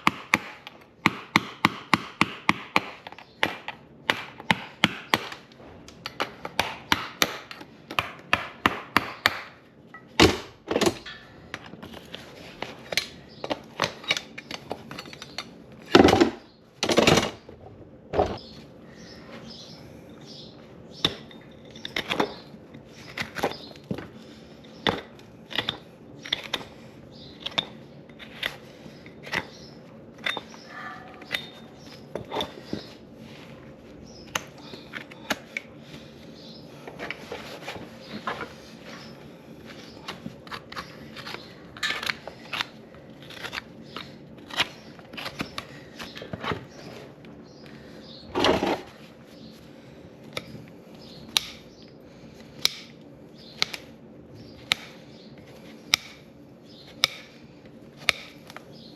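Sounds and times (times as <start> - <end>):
faint steady hum: 0.0 - 58.9
hoof trimming snips and cracks: 21.0 - 33.0, 36.8 - 47.4, 50.2 - 58.9.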